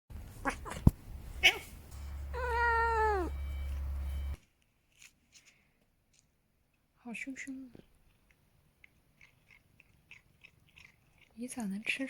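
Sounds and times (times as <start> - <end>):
cat meowing: 0.4 - 1.7, 2.3 - 3.4.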